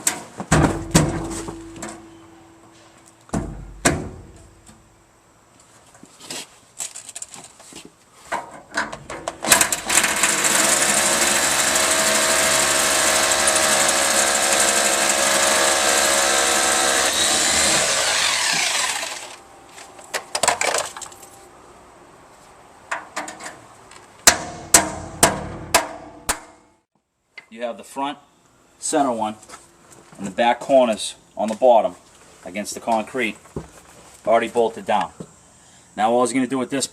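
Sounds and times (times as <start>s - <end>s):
hammer drill boring into concrete: 9.5s - 19.4s.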